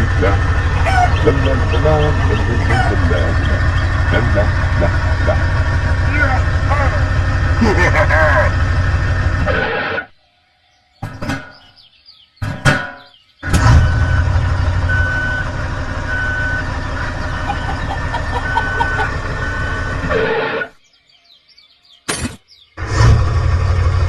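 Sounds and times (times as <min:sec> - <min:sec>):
reversing beeper: 0:00.0 - 0:07.5, 0:13.4 - 0:20.8
heavy vehicle engine running: 0:00.0 - 0:09.9, 0:13.4 - 0:20.7, 0:22.8 - 0:24.0.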